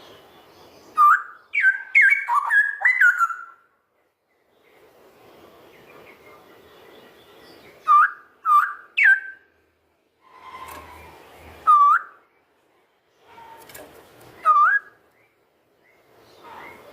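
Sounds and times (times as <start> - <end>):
bird whistled calls: 0.9 - 3.6, 7.8 - 9.4, 10.6 - 12.2, 14.4 - 15.0.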